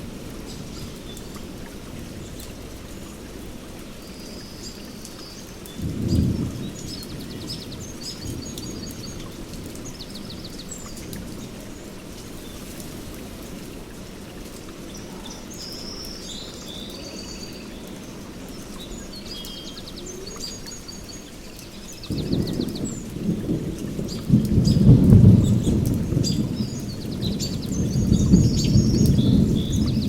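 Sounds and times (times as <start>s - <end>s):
heavy rain falling: 0.0s - 30.0s
thunder rumble: 5.8s - 14.1s, 22.0s - 30.0s.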